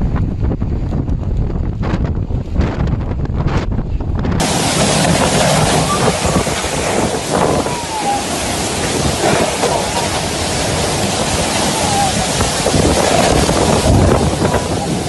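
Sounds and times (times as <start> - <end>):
strong wind on microphone: 0.0 - 15.0
faint thin wind whistle: 3.8 - 15.0.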